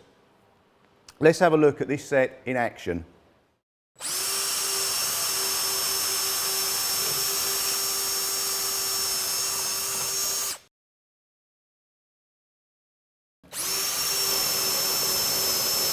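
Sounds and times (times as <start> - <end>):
power drill boring into wood: 4.0 - 10.7, 13.5 - 15.9.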